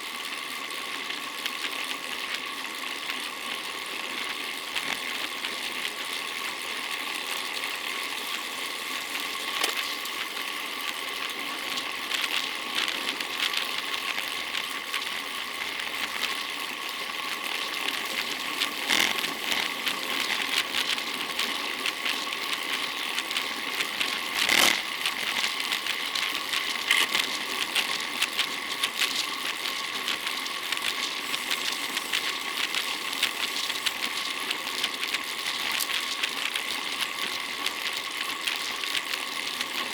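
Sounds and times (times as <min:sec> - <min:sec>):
fast mechanical rattle: 0:18.6 - 0:21.0, 0:23.8 - 0:36.0.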